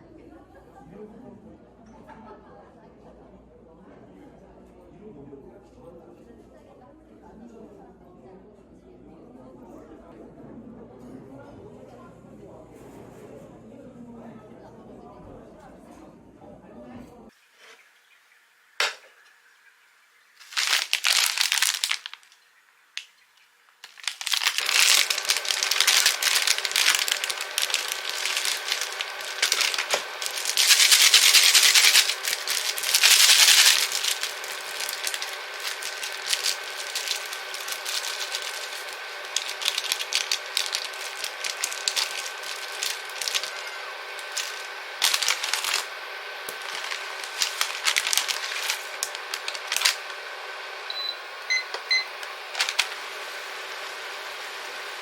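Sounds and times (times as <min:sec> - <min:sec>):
food frying in a pan: 0:17.4 - 0:50.9.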